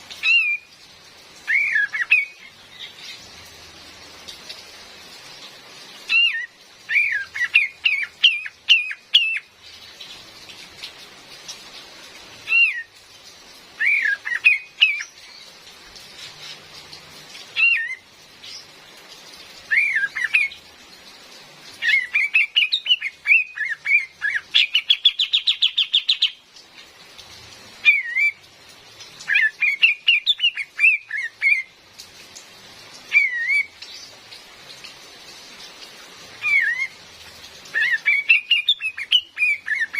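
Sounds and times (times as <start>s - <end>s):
rain hiss: 0.0s - 39.9s
bird chirpy calls: 0.2s - 0.8s, 1.4s - 3.3s, 6.0s - 9.8s, 12.4s - 13.0s, 13.8s - 15.6s, 17.5s - 18.8s, 19.6s - 20.6s, 21.8s - 26.4s, 27.8s - 28.4s, 29.2s - 31.8s, 33.1s - 34.2s, 36.4s - 37.0s, 37.7s - 39.9s.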